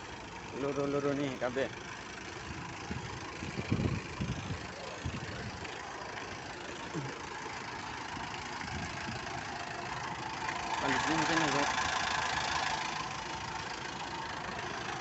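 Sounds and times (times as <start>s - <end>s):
vehicle engine idling: 0.0s - 15.0s
dull low thumps: 2.5s - 5.6s.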